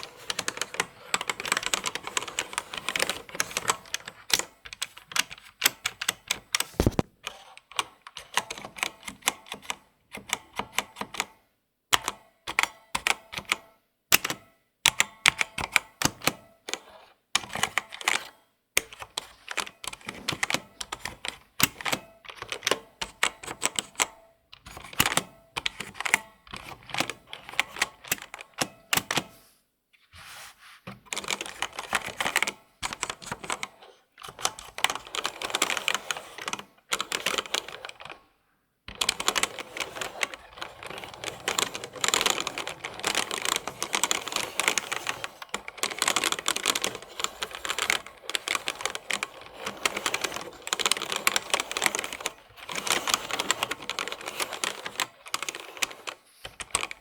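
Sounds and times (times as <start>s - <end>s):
keyboard typing clicks: 0.0s - 7.1s.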